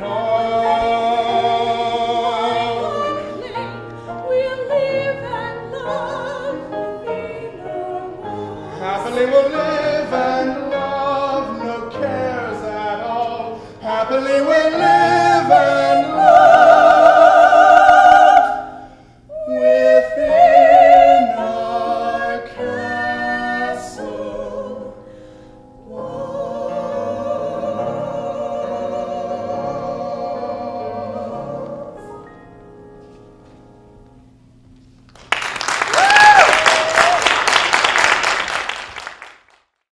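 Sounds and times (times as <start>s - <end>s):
musical theatre singing: 0.0s - 32.6s
audience applause: 35.1s - 39.7s
person whooping: 35.9s - 37.4s.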